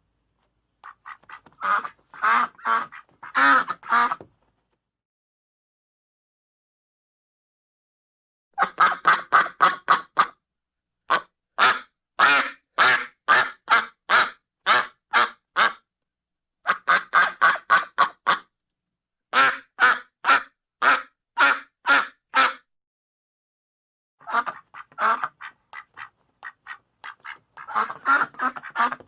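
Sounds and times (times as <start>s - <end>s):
duck quacking: 0.8s - 4.3s, 8.6s - 10.4s, 11.1s - 15.8s, 16.6s - 18.5s, 19.3s - 22.7s, 24.2s - 29.0s.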